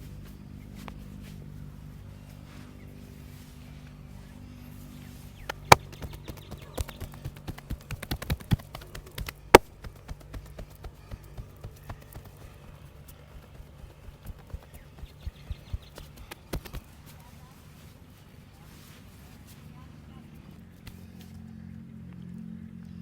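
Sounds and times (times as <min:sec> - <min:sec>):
massage hand slaps and taps: 0:05.4 - 0:17.0.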